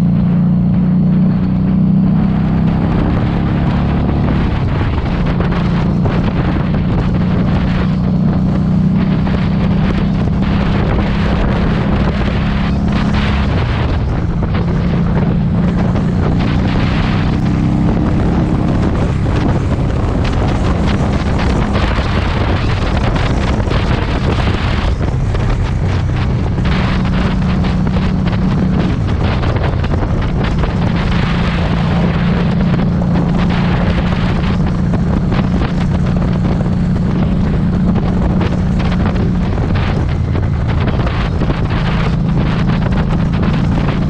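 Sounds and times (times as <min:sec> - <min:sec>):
motorcycle engine running: 0:00.0 - 0:44.0
wind noise on microphone: 0:00.0 - 0:44.0.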